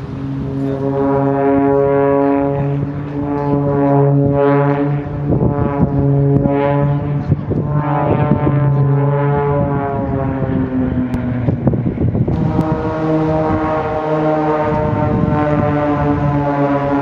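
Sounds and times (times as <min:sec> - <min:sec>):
propeller aircraft engine drone: 0:00.0 - 0:17.0.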